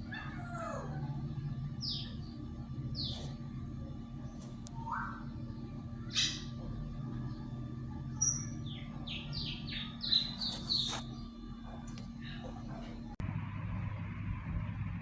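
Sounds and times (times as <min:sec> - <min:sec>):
steady low hum: 0:00.0 - 0:15.0
bird chirping: 0:01.8 - 0:03.4, 0:08.2 - 0:12.8.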